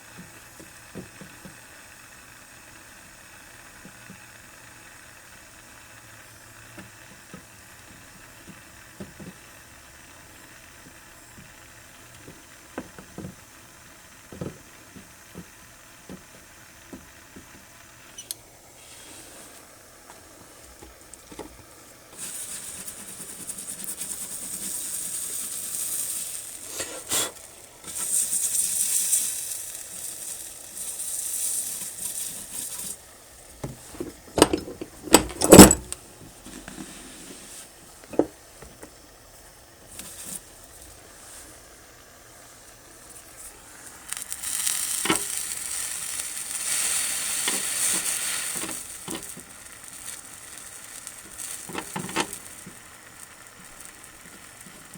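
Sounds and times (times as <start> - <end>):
solder sizzling: 5.8 - 54.9
sharp metallic clicks and knocks: 34.0 - 36.0.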